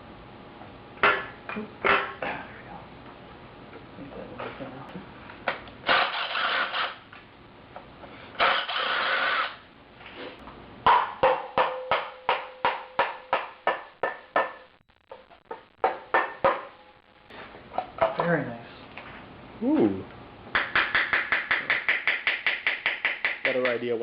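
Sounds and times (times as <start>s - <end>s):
power tool bursts: 5.8s - 7.0s, 8.4s - 9.7s
sharp metallic knocks: 10.8s - 14.7s.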